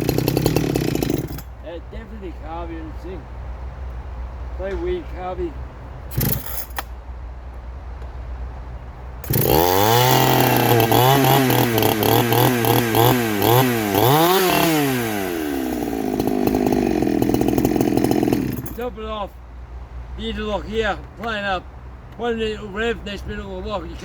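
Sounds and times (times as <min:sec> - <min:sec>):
chainsaw engine revving: 0:00.0 - 0:01.5, 0:06.1 - 0:06.8, 0:09.2 - 0:18.9.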